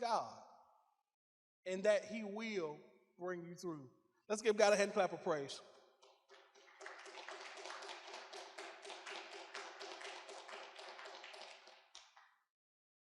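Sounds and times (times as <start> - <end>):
congregation clapping: 5.7 - 12.5.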